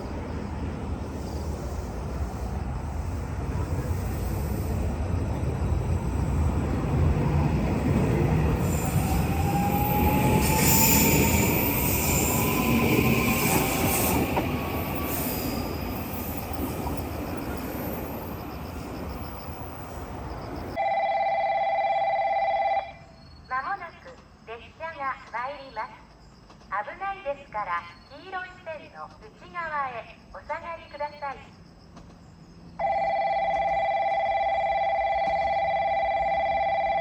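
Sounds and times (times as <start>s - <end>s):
train wheel and rail rumble: 0.0s - 20.8s, 23.0s - 37.0s
train motor whine: 1.5s - 18.1s.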